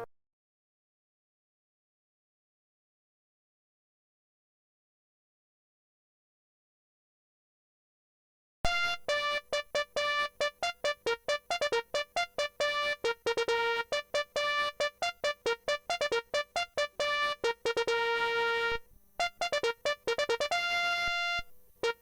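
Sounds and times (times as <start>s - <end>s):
electronic phone ringtone melody: 8.7s - 22.0s.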